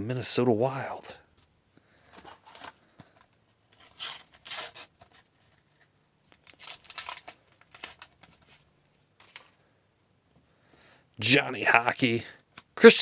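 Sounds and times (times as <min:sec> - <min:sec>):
wrapper tearing and crinkling: 0:03.7 - 0:05.6, 0:06.3 - 0:08.6.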